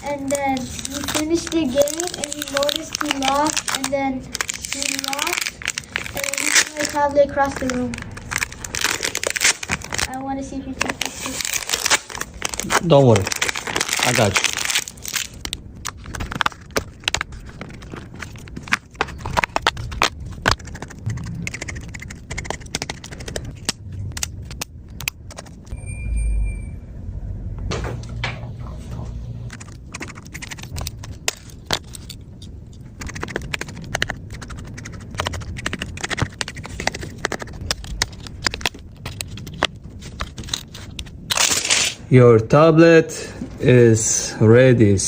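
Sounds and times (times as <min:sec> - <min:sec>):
short electronic beep: 0:25.7 - 0:27.0.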